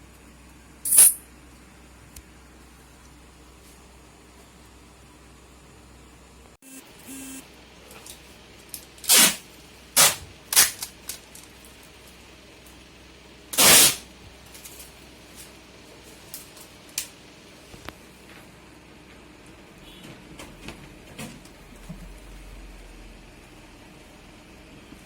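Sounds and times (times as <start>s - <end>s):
short hissing bursts: 13.6s - 14.0s.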